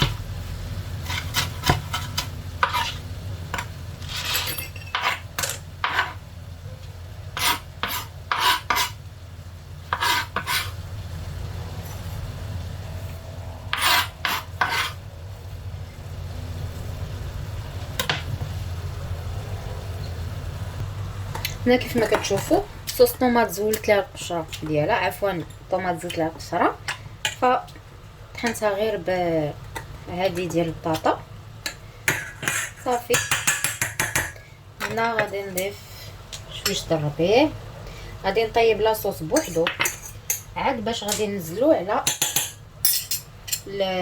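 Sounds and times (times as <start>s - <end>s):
spoon scraping mussel shells in pan: 0.9s - 6.2s, 7.3s - 9.0s, 9.8s - 10.8s, 13.7s - 15.1s, 29.5s - 36.9s, 39.2s - 43.7s
steady low hum: 9.1s - 33.1s.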